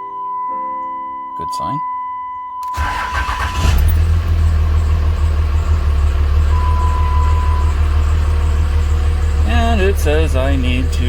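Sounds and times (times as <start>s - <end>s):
diesel engine starting and idling: 2.6s - 11.0s
dash warning tone: 3.7s - 11.0s.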